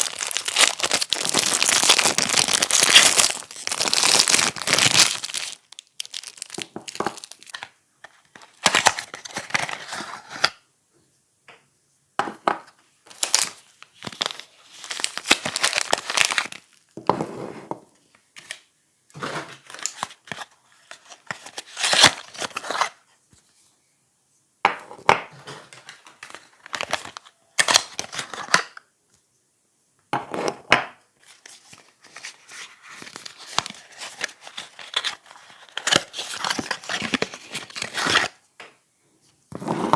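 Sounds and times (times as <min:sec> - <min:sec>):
packaging crinkled and torn by hand: 0:00.0 - 0:07.7, 0:08.3 - 0:09.9, 0:13.1 - 0:16.9, 0:21.0 - 0:22.9, 0:26.1 - 0:28.7, 0:32.9 - 0:38.4.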